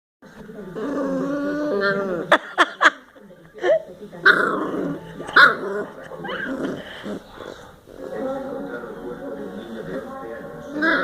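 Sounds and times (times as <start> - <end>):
puppy whining: 4.7 - 7.7, 10.7 - 11.0.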